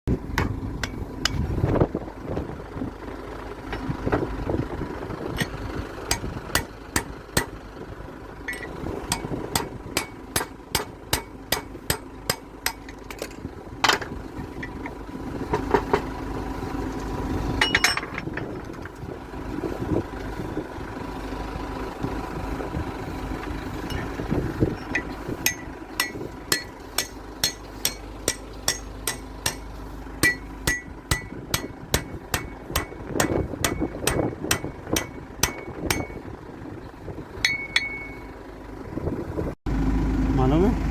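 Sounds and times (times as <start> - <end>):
steady machine hum: 0.1 - 18.3, 19.2 - 38.9
hammer striking metal: 5.4 - 7.6, 8.5 - 13.3, 24.8 - 36.2, 37.4 - 38.3.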